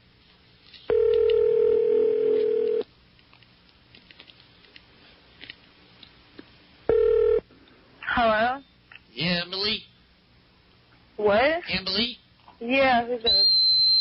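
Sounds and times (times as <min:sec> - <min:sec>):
telephone ringback tone: 0:00.9 - 0:02.8, 0:06.9 - 0:07.4.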